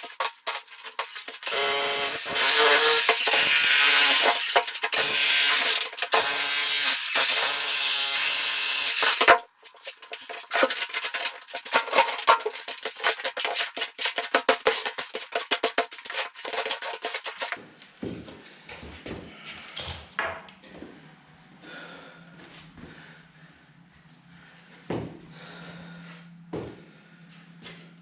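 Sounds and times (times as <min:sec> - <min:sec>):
power drill boring into concrete: 0:00.1 - 0:09.4.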